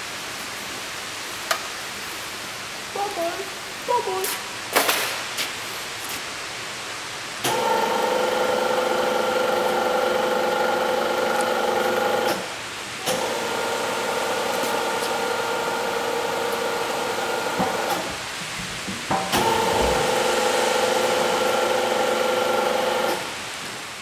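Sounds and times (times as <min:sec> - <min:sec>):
radial drill machine whine: 0:07.5 - 0:12.5, 0:19.4 - 0:23.4.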